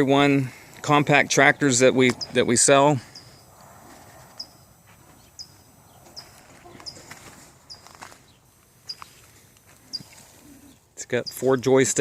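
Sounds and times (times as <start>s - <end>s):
faint bird chirping: 3.0s - 3.5s, 4.3s - 11.6s.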